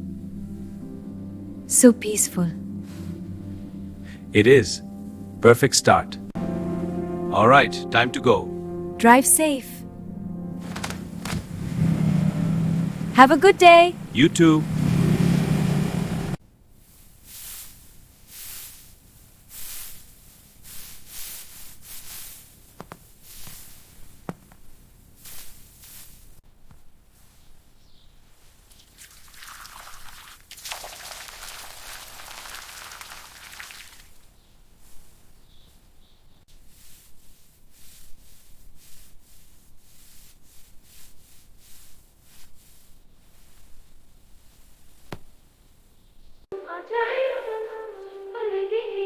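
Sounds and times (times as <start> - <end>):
soft swishing hisses: 0.0 - 4.6, 16.1 - 26.4, 36.5 - 45.2
rubbing or scraping strokes: 10.5 - 12.1, 16.8 - 26.4, 36.5 - 45.2.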